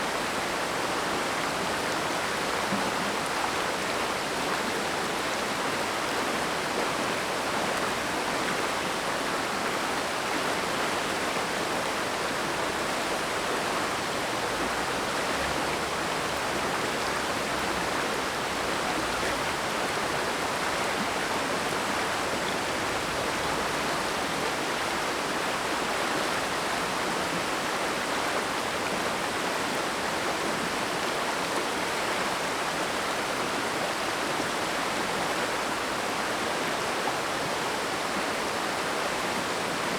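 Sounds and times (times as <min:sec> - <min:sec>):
mountain stream rushing: 0:00.0 - 0:39.9.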